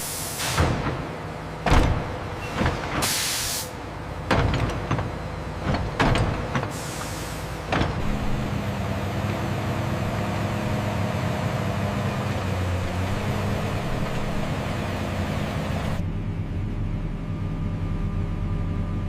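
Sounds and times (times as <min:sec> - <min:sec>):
air hiss: 0:03.0 - 0:03.8, 0:06.7 - 0:07.5
engine running: 0:03.6 - 0:19.0
metallic clanks and knocks: 0:04.2 - 0:06.8.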